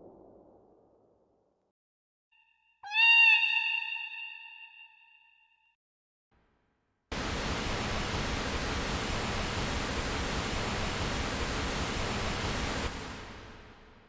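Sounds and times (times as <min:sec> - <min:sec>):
steady pink noise hiss: 0:07.1 - 0:14.0.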